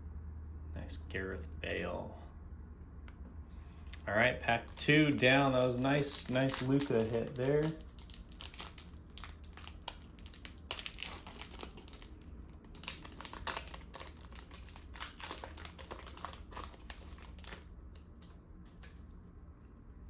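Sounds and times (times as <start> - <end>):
wrapper crinkling: 3.8 - 18.3.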